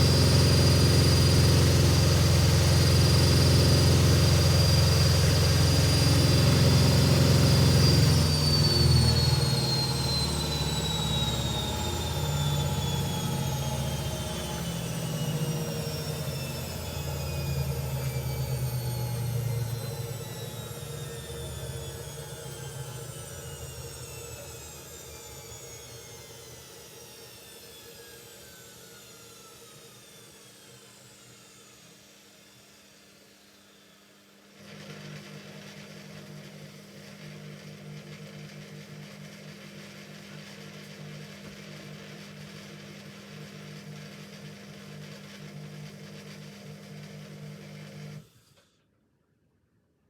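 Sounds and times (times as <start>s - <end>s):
drain pump hum: 0.0s - 18.4s
washing machine drum motor whine: 0.0s - 32.6s, 34.5s - 48.2s.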